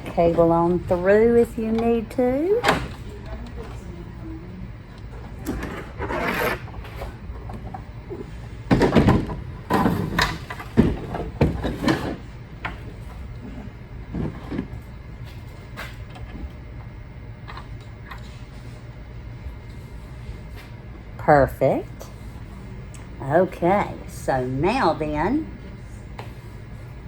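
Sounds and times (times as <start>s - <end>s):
cable scraping through frame: 5.6s - 6.7s.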